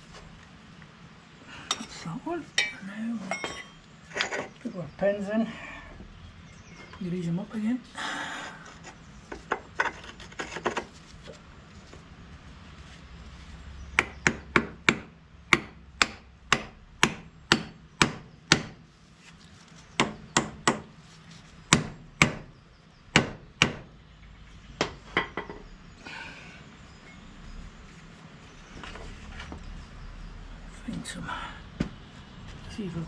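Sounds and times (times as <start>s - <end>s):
hammer striking steel pin: 2.6s - 3.8s.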